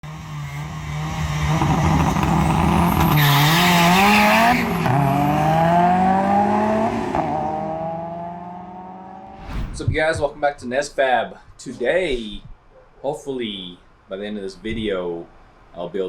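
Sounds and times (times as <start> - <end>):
car engine accelerating hard: 0.1 - 9.4.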